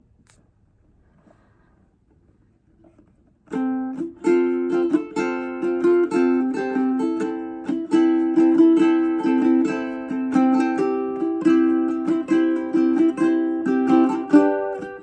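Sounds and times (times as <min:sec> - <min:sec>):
faint shuffle: 0:00.0 - 0:03.5
ukulele strummed chords: 0:03.5 - 0:15.0.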